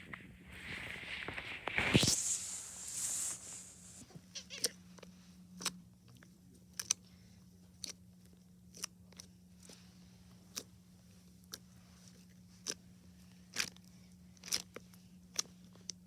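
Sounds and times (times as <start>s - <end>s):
soft squishing hiss of slime: 0.0s - 4.1s.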